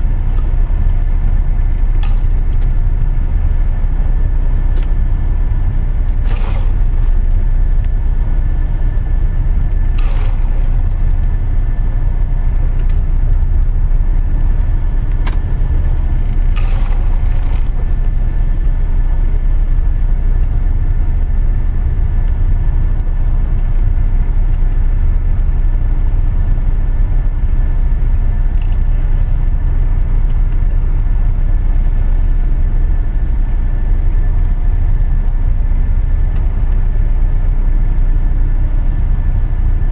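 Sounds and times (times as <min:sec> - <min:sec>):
boat engine rumble: 0:00.0 - 0:39.9
faint steady whine: 0:00.0 - 0:39.9
water washing over porthole: 0:05.6 - 0:12.6, 0:16.0 - 0:19.0.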